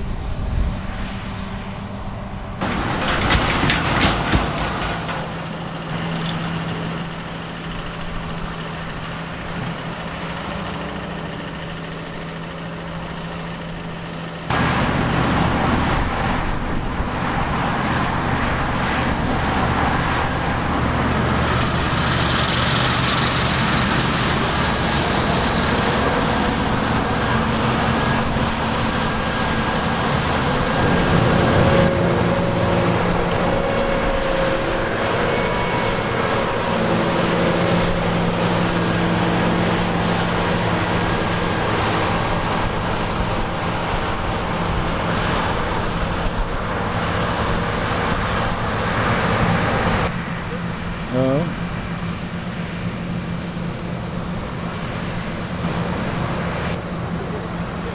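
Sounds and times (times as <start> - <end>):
diesel engines running: 0.0 - 57.9.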